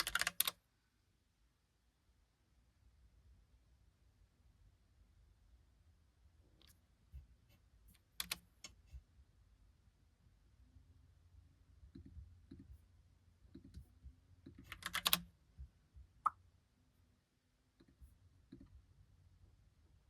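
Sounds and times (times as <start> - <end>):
mechanical keyboard typing: 0.0 - 0.6, 8.1 - 8.8, 14.5 - 15.3.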